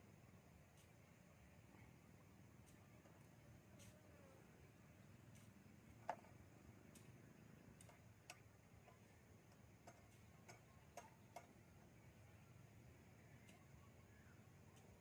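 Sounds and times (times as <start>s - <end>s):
low hiss: 0.0s - 15.0s
faint ticks: 0.7s - 1.0s, 2.6s - 4.4s, 5.3s - 15.0s.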